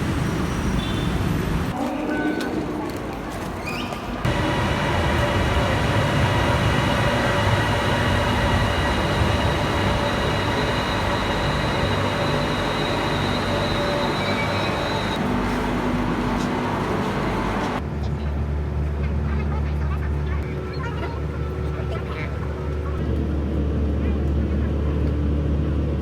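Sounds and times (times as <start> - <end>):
train rumble: 2.4 - 26.0
high whining tones: 4.3 - 15.2.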